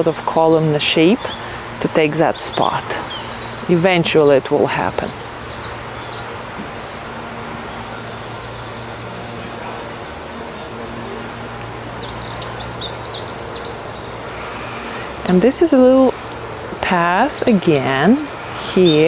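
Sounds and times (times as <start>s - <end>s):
birds chirping: 0.0s - 19.0s
insects trilling: 0.0s - 19.0s.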